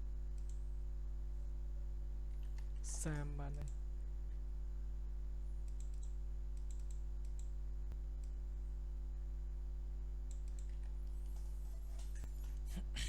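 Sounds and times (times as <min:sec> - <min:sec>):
low electrical hum: 0:00.0 - 0:13.0
computer mouse clicks: 0:00.4 - 0:00.6, 0:05.6 - 0:07.6, 0:10.3 - 0:12.7.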